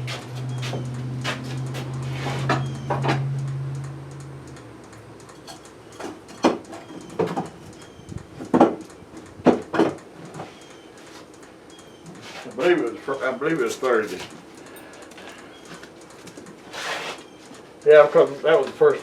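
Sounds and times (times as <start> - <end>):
steady low hum: 0.0 - 19.0
knocks of things handled: 8.4 - 8.8, 9.4 - 10.5.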